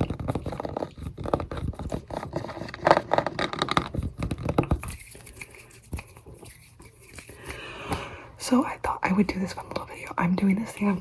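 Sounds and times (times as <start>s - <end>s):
tapping and scratching on objects: 0.0s - 8.0s.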